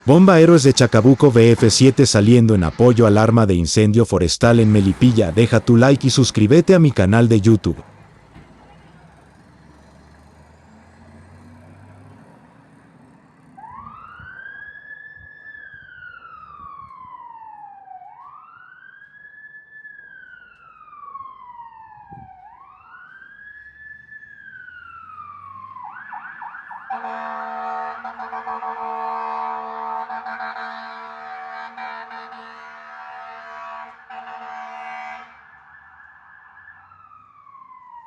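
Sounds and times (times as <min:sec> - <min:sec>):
engine rumble: 0:00.0 - 0:03.5, 0:04.3 - 0:17.2, 0:20.0 - 0:30.0
fire engine siren wailing: 0:00.0 - 0:03.5, 0:04.4 - 0:38.0
loud horn blast: 0:26.9 - 0:35.5.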